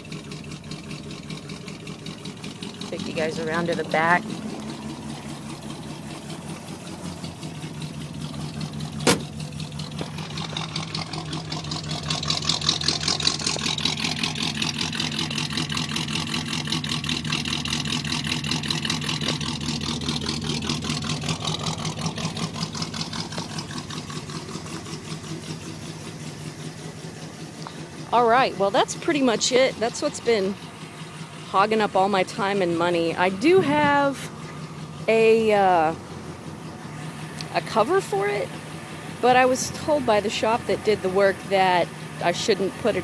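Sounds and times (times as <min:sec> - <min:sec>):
car engine idling: 0:00.0 - 0:43.0.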